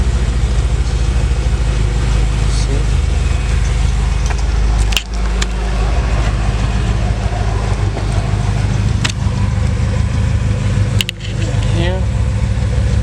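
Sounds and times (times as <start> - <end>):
car engine idling: 0.0 - 13.0
sharp clicks: 3.6 - 5.6, 11.0 - 11.7.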